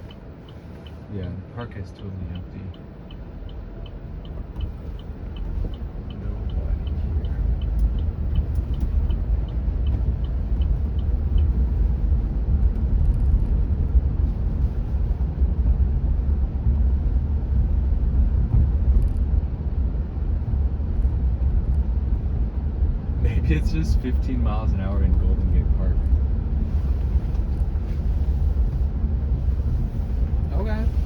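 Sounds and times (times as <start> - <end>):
faint regular ticking: 0.0 - 1.0, 2.3 - 13.5
tyre and road noise: 0.0 - 31.0.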